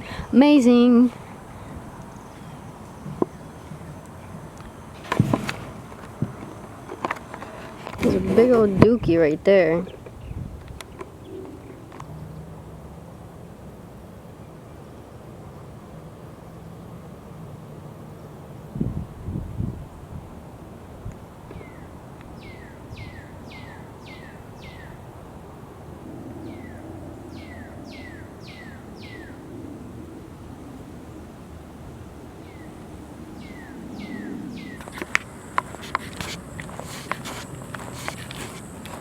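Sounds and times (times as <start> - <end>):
crunching footsteps: 1.1 - 8.9, 34.8 - 39.0.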